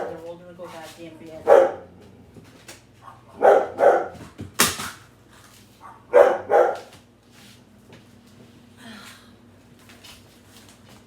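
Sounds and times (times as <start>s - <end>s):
dog barking: 1.4s - 1.9s, 3.0s - 4.2s, 5.8s - 6.9s.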